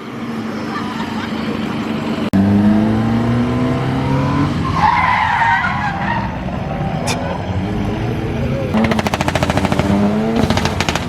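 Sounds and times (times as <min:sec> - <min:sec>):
car engine revving: 0:02.1 - 0:05.2, 0:06.1 - 0:11.0.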